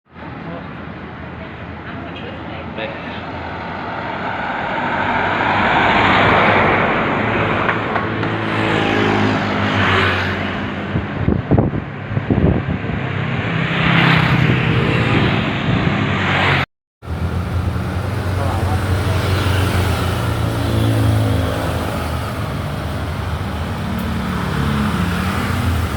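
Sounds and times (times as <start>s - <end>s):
vehicles passing: 0.1s - 25.9s
bus diesel engine humming: 17.0s - 25.9s.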